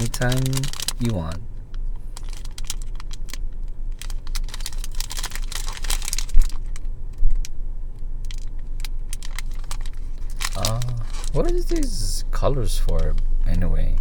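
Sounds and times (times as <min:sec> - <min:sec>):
snack packaging crinkling: 0:00.0 - 0:07.5, 0:08.2 - 0:11.9.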